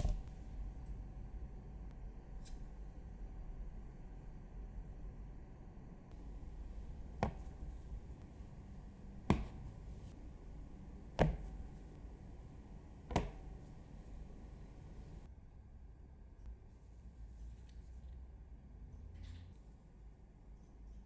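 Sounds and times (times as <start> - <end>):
low steady background hum: 0.0 - 21.0
short sharp knocks: 9.2 - 10.2, 11.0 - 11.8.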